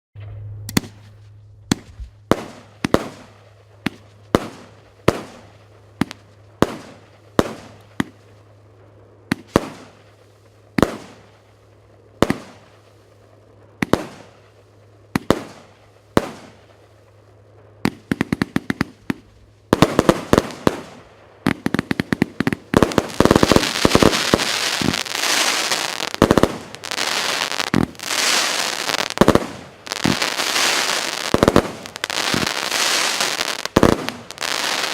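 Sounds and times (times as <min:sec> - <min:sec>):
fireworks shots and crackling: 0:00.2 - 0:34.9.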